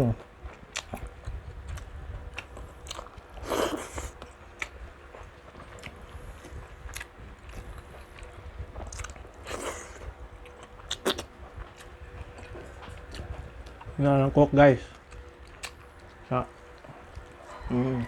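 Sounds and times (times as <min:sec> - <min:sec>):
crispy food crunching: 0:00.0 - 0:18.0
person chewing: 0:00.2 - 0:14.0, 0:14.9 - 0:17.6.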